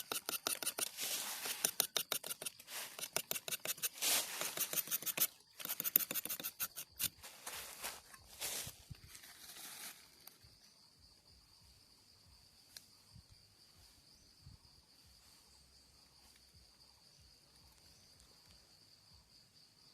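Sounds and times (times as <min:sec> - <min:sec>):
sharp click: 0:00.0 - 0:07.2
high-pitched insect trill: 0:00.0 - 0:19.9.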